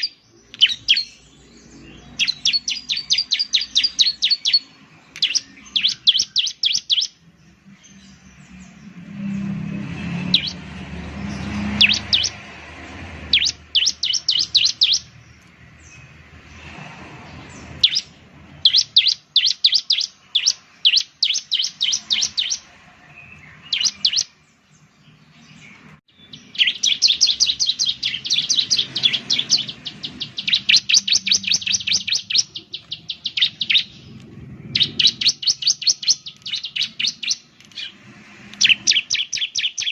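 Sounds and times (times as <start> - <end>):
bird singing rapid high chirps: 0.0 - 39.9
low rumble: 32.5 - 35.4.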